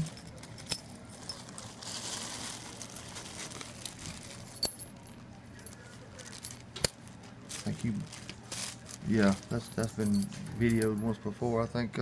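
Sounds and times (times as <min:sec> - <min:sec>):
soft rustle: 0:01.2 - 0:04.6
padlocks clinking: 0:09.2 - 0:11.1.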